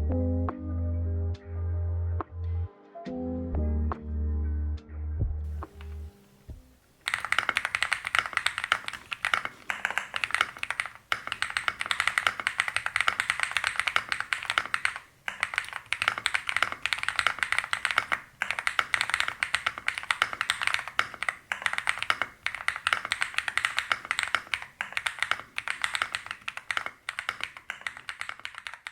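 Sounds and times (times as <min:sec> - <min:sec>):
fast typing on mechanical keyboard: 0:05.5 - 0:06.1, 0:07.0 - 0:28.9.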